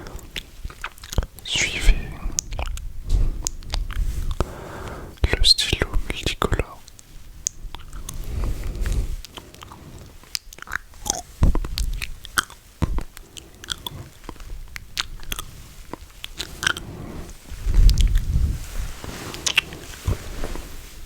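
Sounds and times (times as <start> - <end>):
wet mouth clicks and smacks: 0.2 - 4.5, 5.2 - 8.3, 9.2 - 16.9, 17.8 - 18.3.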